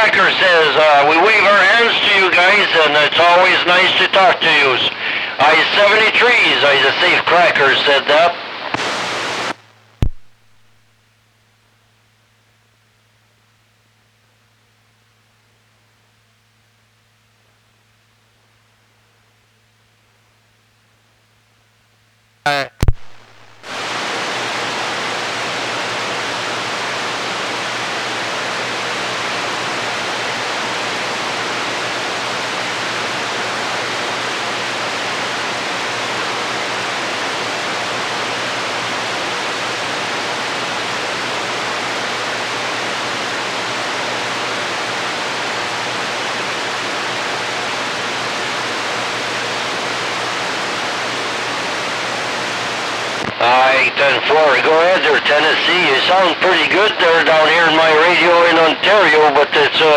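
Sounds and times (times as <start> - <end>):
radio static hiss: 0.0 - 10.9, 22.5 - 59.9
radio chirp and click: 8.5 - 10.8, 22.5 - 23.9, 53.2 - 57.4.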